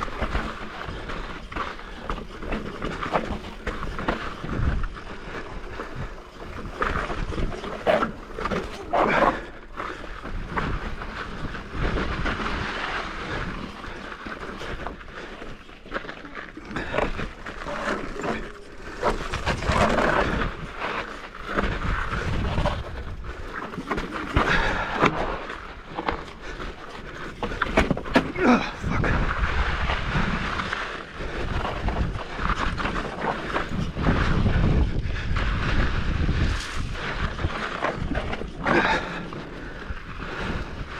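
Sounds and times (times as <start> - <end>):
bike knocking and rattling: 0.0 - 40.9
wind on microphone: 16.8 - 23.6, 27.8 - 40.9.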